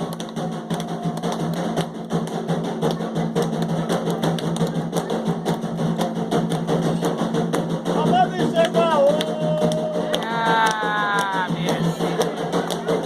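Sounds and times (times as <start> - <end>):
hand drums playing fast rhythm: 0.0 - 13.0
chanting: 9.0 - 13.0.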